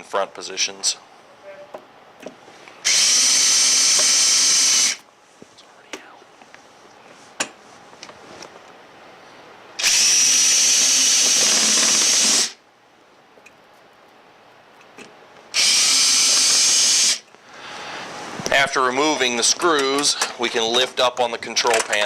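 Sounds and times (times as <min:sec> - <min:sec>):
power drill spinning out screws: 0:02.8 - 0:05.0, 0:09.8 - 0:12.6, 0:15.6 - 0:17.2.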